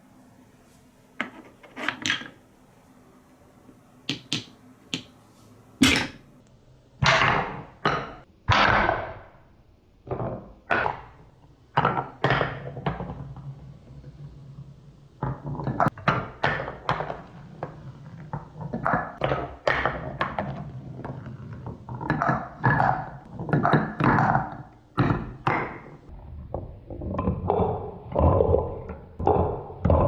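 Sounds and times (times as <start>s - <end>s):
marbles clacking on wood: 4.1s - 5.1s.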